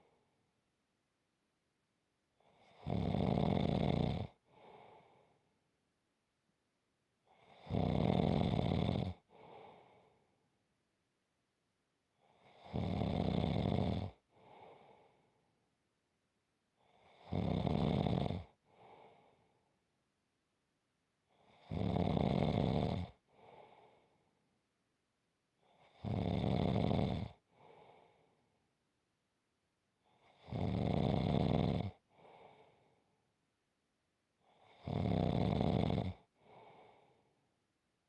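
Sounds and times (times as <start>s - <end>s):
person snoring: 2.4s - 5.3s, 7.3s - 10.1s, 12.4s - 14.2s, 17.0s - 18.6s, 21.5s - 24.0s, 25.8s - 28.2s, 30.2s - 32.8s, 34.6s - 37.2s.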